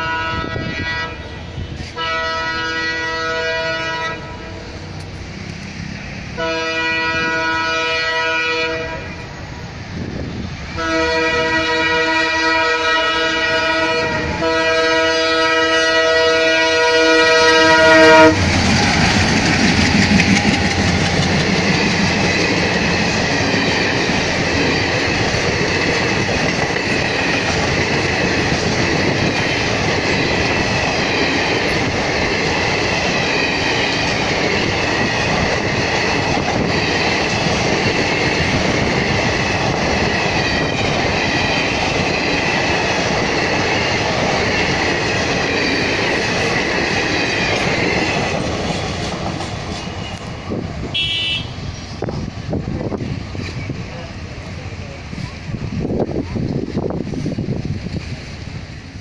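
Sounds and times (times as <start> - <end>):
locomotive horn: 0.0 - 4.7, 6.4 - 9.3, 10.8 - 18.6, 50.9 - 51.7
train coaches rumbling over rails: 0.0 - 59.0.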